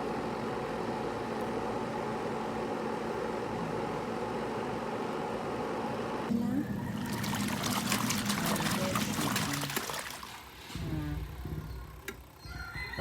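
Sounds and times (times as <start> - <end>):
spin dryer whirring: 4.9 - 12.4.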